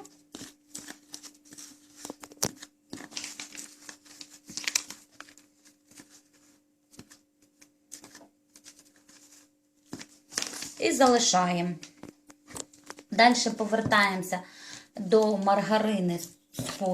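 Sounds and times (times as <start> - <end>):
spoon stirring flour in bowl: 0.0 - 4.6, 16.2 - 16.9.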